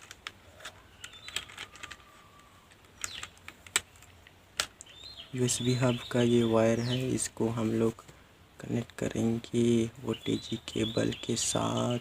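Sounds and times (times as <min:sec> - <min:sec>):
plastic keyboard and mouse clicks: 0:00.0 - 0:05.0.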